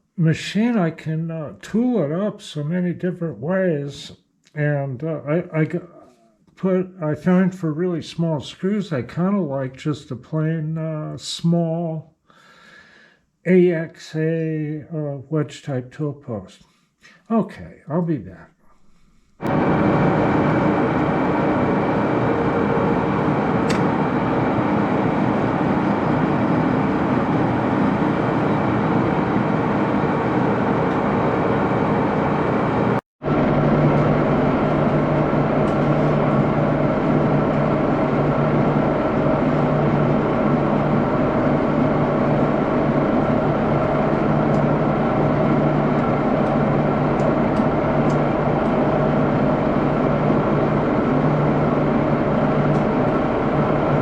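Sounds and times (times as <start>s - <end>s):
lathe humming: 19.4s - 54.0s.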